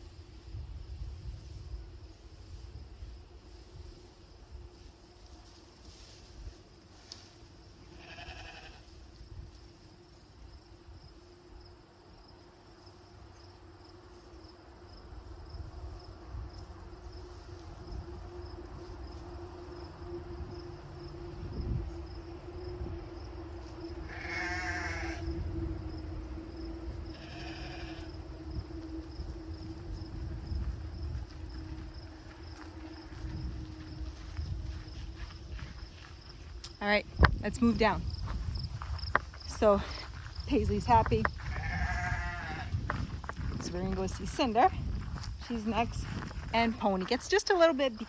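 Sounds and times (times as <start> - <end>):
insect chirping: 7.4 - 48.0
livestock wavering cries: 7.8 - 8.9, 24.0 - 25.4, 27.1 - 28.3, 40.6 - 42.8
steady hum: 16.2 - 41.4.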